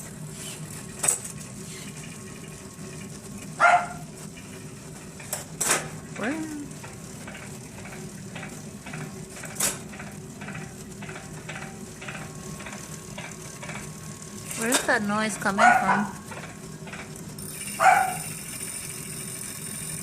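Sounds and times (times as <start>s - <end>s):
bike trainer whirring: 0.0s - 20.0s
faint rhythmic ticking: 6.0s - 20.0s.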